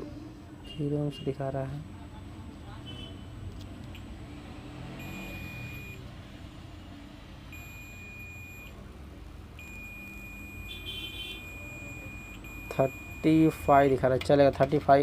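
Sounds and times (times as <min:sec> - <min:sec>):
multimeter continuity beep: 0:04.9 - 0:06.1, 0:07.5 - 0:08.8, 0:09.6 - 0:14.0.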